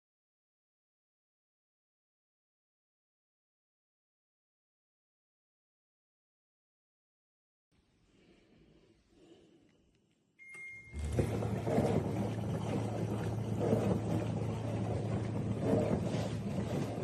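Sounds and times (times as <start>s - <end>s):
electronic beep: 10.4s - 11.0s
dishwasher pump hum: 10.4s - 17.0s.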